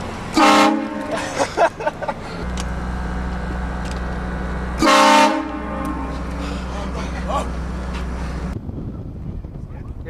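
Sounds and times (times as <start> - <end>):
engine running hum: 0.0 - 10.0
loud car air horn blasting: 0.3 - 1.2, 4.8 - 6.6.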